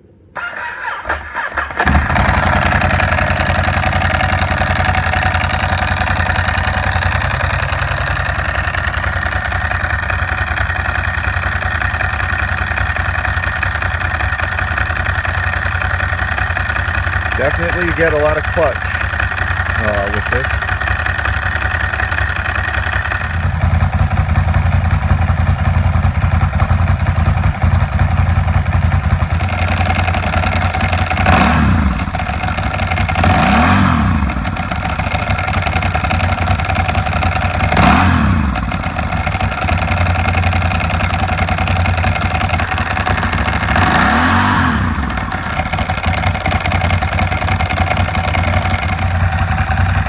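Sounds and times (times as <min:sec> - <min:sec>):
dry clutch rattle: 0:00.4 - 0:50.0
motorcycle engine idling: 0:00.4 - 0:50.0
motorcycle throttle blips: 0:00.4 - 0:50.0.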